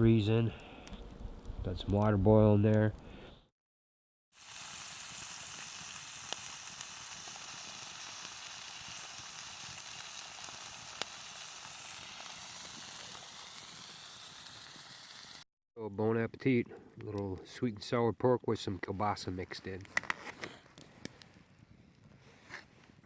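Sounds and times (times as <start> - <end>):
campfire: 0.0 - 3.4, 4.4 - 15.4, 16.0 - 23.0
meat sizzling in a pan: 4.4 - 15.4.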